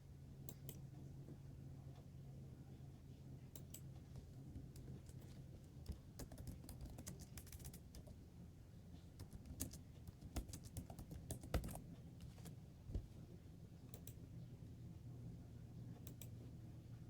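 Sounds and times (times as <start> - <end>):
keyboard keystrokes: 5.8 - 8.1, 9.2 - 12.6.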